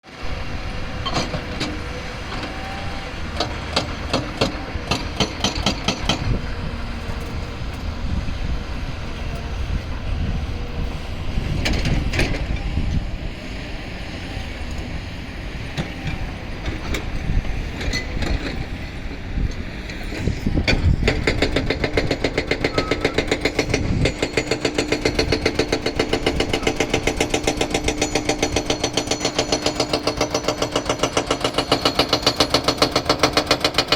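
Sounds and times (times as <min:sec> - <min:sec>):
vehicle engine noise: 0:00.0 - 0:33.9
scattered clicks and knocks: 0:03.4 - 0:06.4, 0:19.9 - 0:33.9.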